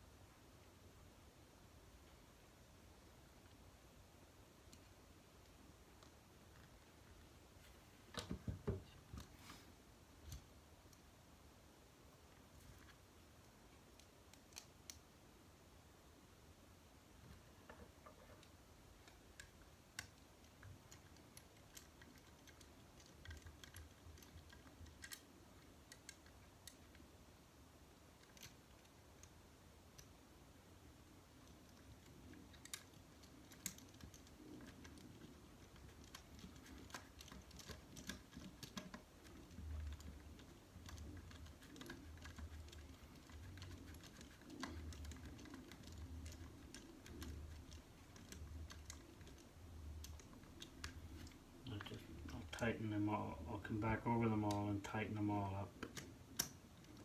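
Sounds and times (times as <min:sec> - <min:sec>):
small parts clicking and tapping: 0:10.2 - 0:11.1, 0:12.3 - 0:15.1, 0:17.2 - 0:27.2, 0:28.0 - 0:52.7, 0:53.8 - 0:57.0.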